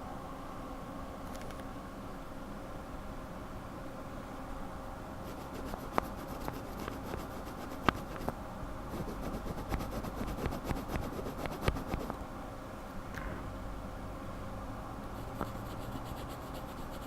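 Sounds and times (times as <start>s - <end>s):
faint hum: 0.0s - 17.0s
keyboard switches rubbing and ticking: 5.3s - 8.3s, 9.0s - 12.2s.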